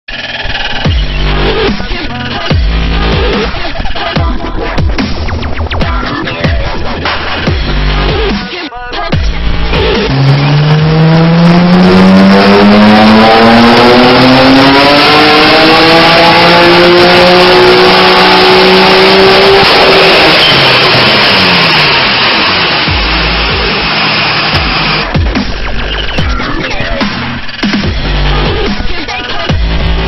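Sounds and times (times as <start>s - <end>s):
car engine revving at full throttle: 9.2s - 25.7s.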